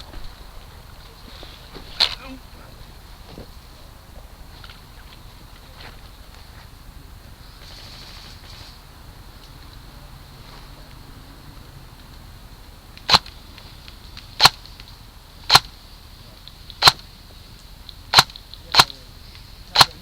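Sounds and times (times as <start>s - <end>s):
airsoft gun shots: 13.0s - 13.4s, 14.3s - 14.8s, 15.4s - 15.8s, 16.7s - 17.1s, 18.0s - 19.1s, 19.7s - 20.0s.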